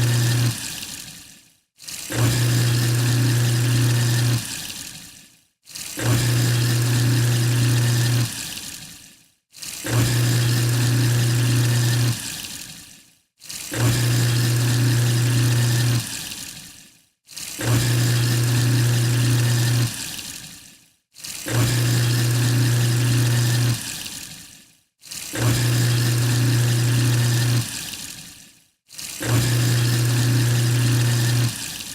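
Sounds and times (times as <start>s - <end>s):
garbage disposal motor hum: 0.0s - 0.7s, 2.1s - 4.4s, 6.0s - 8.3s, 9.9s - 12.2s, 13.7s - 16.1s, 17.6s - 20.0s, 21.5s - 23.9s, 25.4s - 27.7s, 29.2s - 31.8s.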